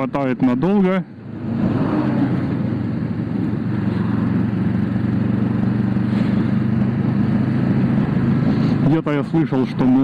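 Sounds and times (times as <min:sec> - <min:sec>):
road and air noise: 0:00.0 - 0:10.0
motorcycle engine running: 0:01.2 - 0:10.0.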